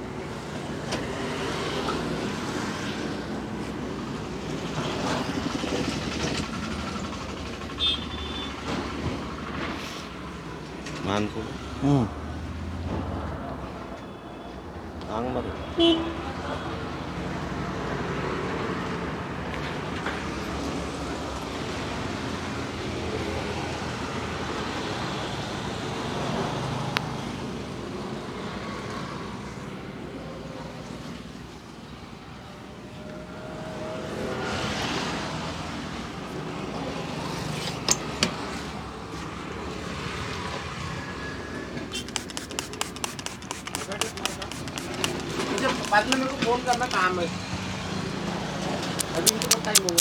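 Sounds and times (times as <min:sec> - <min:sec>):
roadside traffic noise: 0:00.0 - 0:50.0
sharp clicks: 0:42.0 - 0:47.0, 0:49.0 - 0:50.0.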